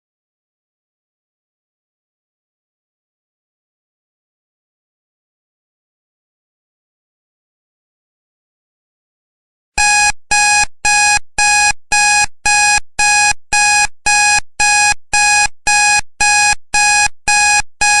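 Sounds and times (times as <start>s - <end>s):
timer alarm beeping: 9.8s - 18.0s.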